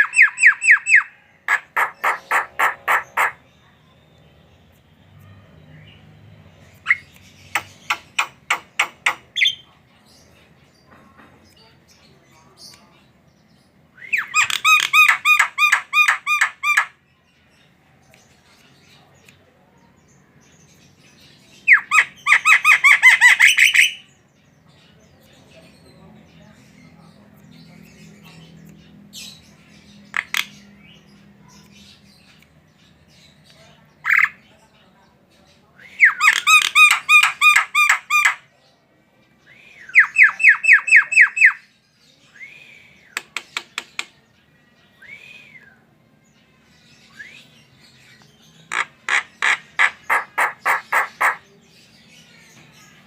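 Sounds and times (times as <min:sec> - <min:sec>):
bird calling sharp notes: 0:00.0 - 0:03.4
bird chirping: 0:00.0 - 0:53.0.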